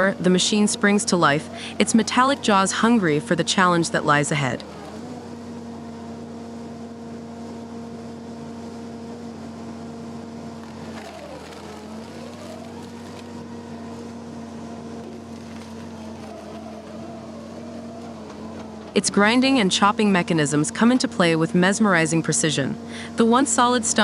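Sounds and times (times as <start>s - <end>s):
stump grinder engine running: 0.0s - 7.4s, 9.3s - 20.9s.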